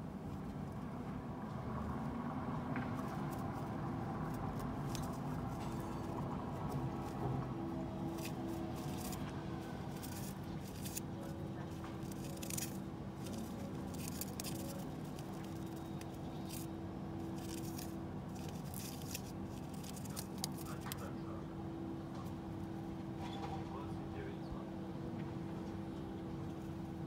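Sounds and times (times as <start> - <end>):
pigeon preening feathers rustling: 0.0 - 21.2
steady low hum: 0.0 - 27.0.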